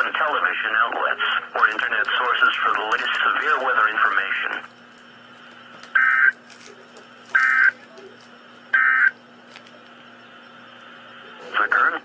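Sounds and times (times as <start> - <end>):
faint steady hum: 0.0 - 12.0
digital data tone bursts: 6.0 - 6.4, 7.3 - 7.8, 8.7 - 9.2.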